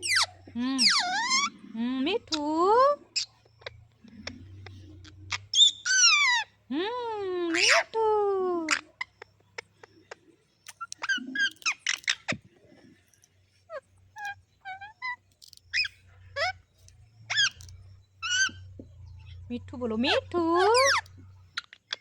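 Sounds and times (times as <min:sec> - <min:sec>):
parrot chirping and squawking: 0:00.0 - 0:01.7, 0:03.0 - 0:06.6, 0:08.7 - 0:13.0, 0:13.7 - 0:19.5, 0:20.1 - 0:22.0.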